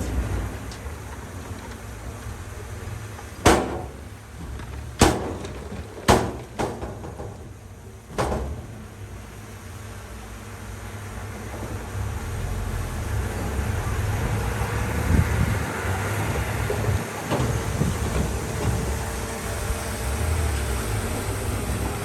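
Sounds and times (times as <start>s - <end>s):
sharp bangs: 0.0s - 9.1s
diesel engine running low: 0.0s - 22.0s.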